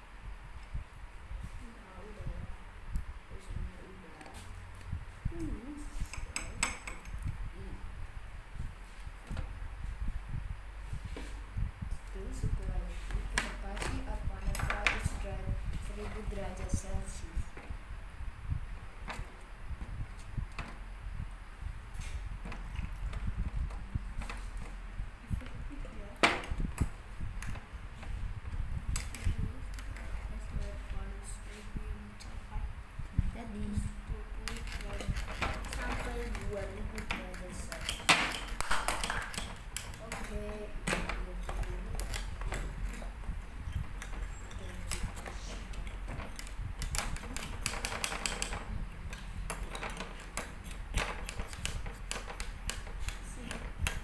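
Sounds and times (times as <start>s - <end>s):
low steady hum: 0.0s - 54.0s
light clicks and taps: 34.4s - 54.0s
kitchen utensils knocking and clicking: 34.5s - 43.1s.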